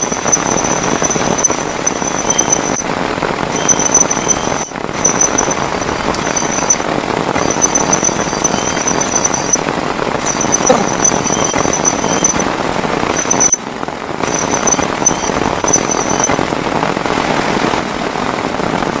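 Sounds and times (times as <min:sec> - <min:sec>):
high thin pulsing chirr: 0:00.0 - 0:02.9, 0:03.5 - 0:12.5, 0:13.1 - 0:13.6, 0:14.2 - 0:16.4
heavy rain pouring: 0:00.0 - 0:19.0.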